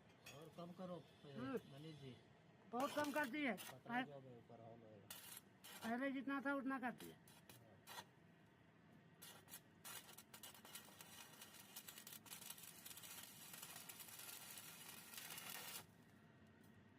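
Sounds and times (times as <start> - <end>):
welding arc crackling hiss: 9.2 - 15.9.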